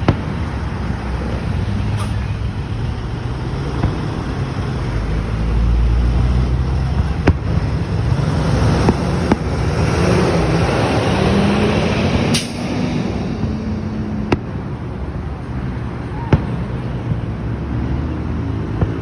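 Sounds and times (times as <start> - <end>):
vehicle engine humming: 0.0 - 19.0
sharp pops or clicks: 12.3 - 12.8.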